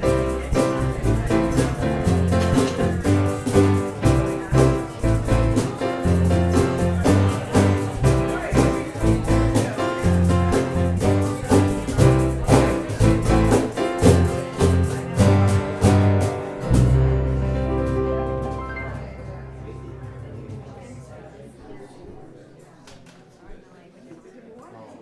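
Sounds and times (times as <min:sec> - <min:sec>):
instrumental music with bass and beat: 0:00.0 - 0:19.1.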